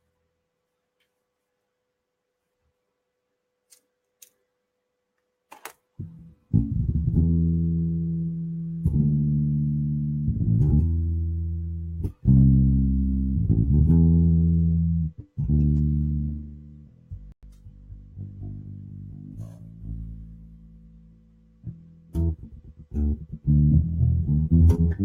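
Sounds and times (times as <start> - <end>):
electric bass guitar notes: 6.0 - 25.0.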